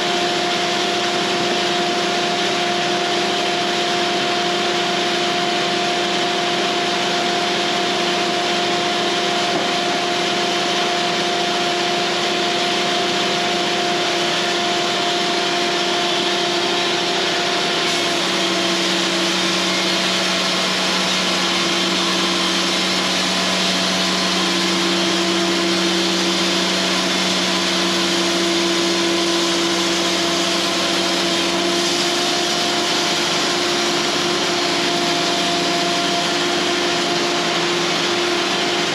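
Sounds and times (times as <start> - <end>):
saw blade cutting wood: 7.8 - 38.9.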